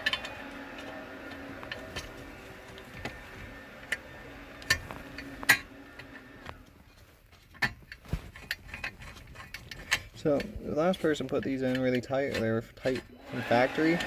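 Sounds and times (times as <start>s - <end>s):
faint steady hum: 0.0s - 10.8s
hand tools clicking and knocking: 0.0s - 14.0s.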